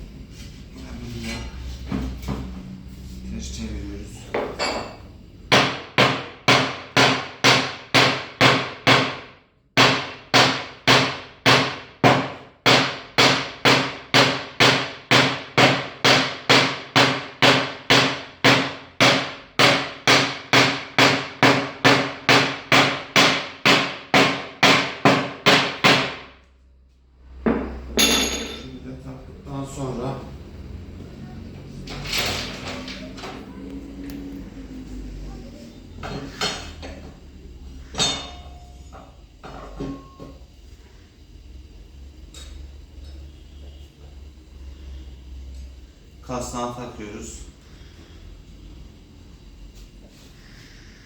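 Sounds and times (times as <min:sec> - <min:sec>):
hammer striking metal bearing: 0:27.5 - 0:28.8, 0:37.8 - 0:39.1.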